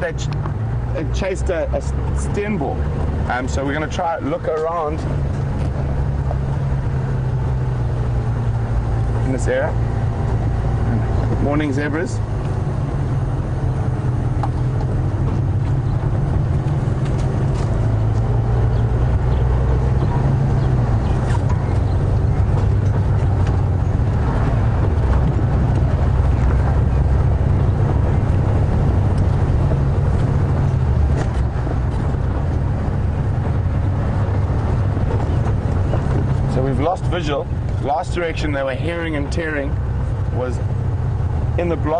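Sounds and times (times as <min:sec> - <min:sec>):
road noise: 0:00.0 - 0:41.9
vehicle engine rumbling: 0:00.0 - 0:41.9.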